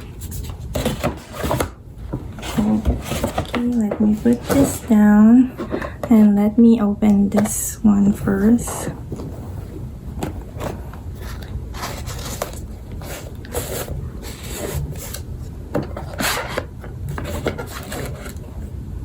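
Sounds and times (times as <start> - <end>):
cardboard and paper rubbing: 0.0 - 6.2, 10.5 - 15.2, 15.9 - 18.5.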